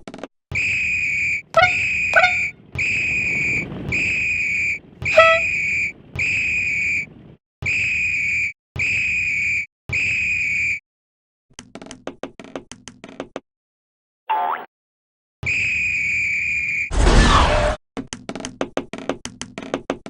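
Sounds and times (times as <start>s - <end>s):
high whistle blasts: 0.5s - 10.8s, 15.4s - 16.9s
sharp chirps: 0.6s - 7.1s.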